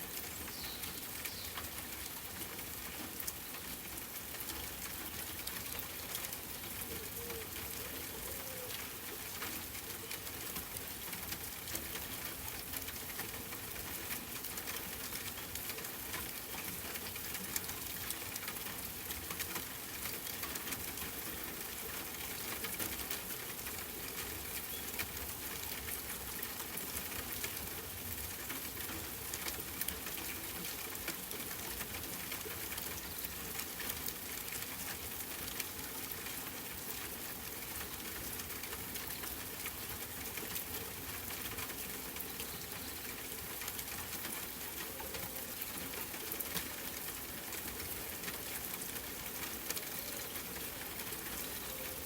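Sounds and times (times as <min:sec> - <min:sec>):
rain pattering: 0:00.0 - 0:52.0
faint bird calls: 0:06.8 - 0:08.9, 0:49.6 - 0:52.0.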